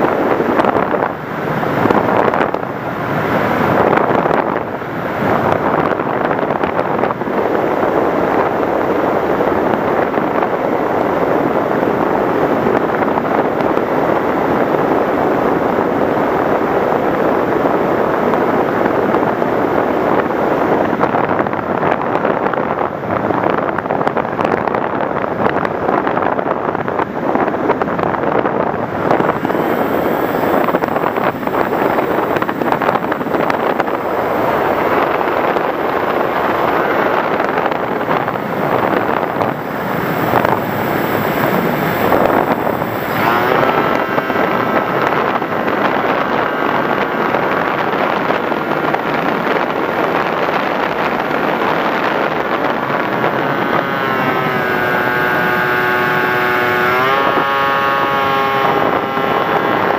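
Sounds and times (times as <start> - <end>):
wind rushing over microphone: 0.0 - 59.9
faint motor whine: 25.5 - 59.9.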